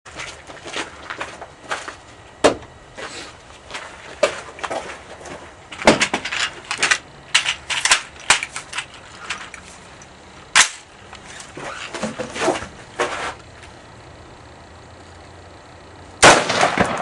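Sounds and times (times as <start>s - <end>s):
rifle handling clicks and knocks: 3.7s - 12.6s.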